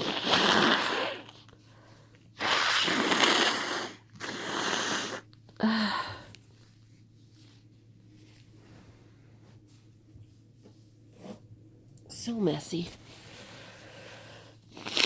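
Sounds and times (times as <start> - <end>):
woman blowing congested nose: 0.0 - 1.4, 2.4 - 5.3, 14.7 - 15.0.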